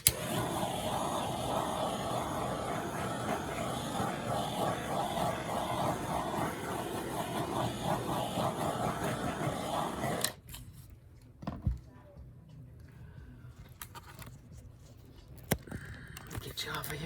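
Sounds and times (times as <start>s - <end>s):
torch flame hissing: 0.0s - 10.4s
torch shutoff click: 0.0s - 10.4s.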